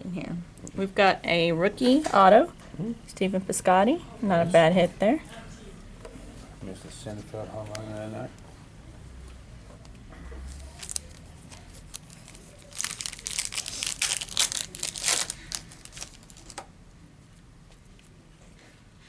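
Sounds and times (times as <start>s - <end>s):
plastic wrapper tearing and crinkling: 10.5s - 16.7s.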